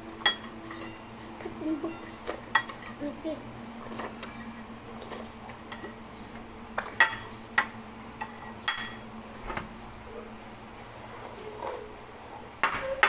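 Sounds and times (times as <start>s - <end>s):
utensils clinking against a bowl: 0.0s - 9.1s.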